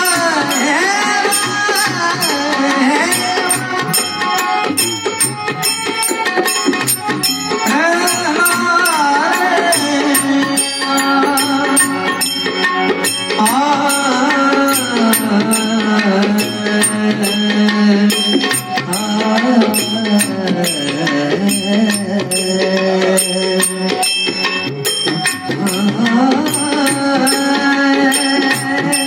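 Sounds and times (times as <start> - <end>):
harmonium notes: 0.0 - 29.0
person singing: 0.0 - 29.0
sharp metallic ticks: 0.0 - 29.0
tabla strokes: 0.0 - 29.0.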